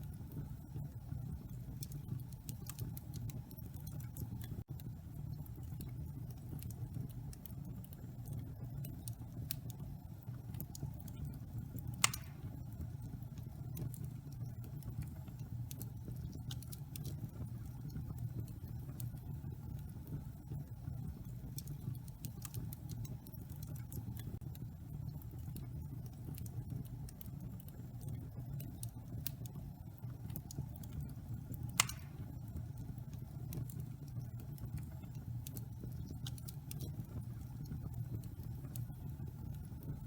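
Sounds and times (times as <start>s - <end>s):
fire crackling: 0.0s - 40.0s
fire rumbling: 0.0s - 40.0s.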